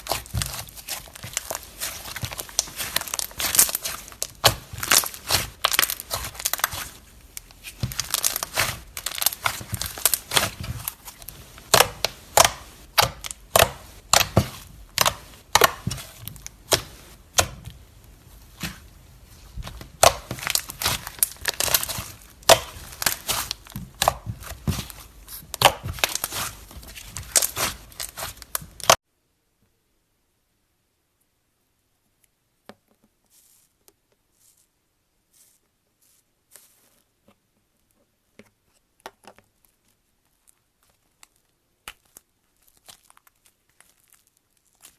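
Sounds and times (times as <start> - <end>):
slime crackling and popping: 0.0 - 29.0, 40.4 - 44.9.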